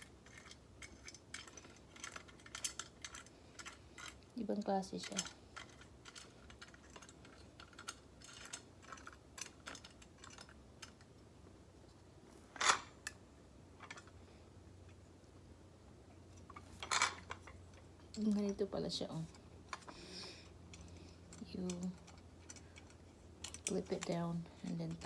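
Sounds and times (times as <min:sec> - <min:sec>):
grinder parts clicking and tapping: 0:00.0 - 0:11.1, 0:13.8 - 0:14.2, 0:16.4 - 0:18.6, 0:19.2 - 0:25.0.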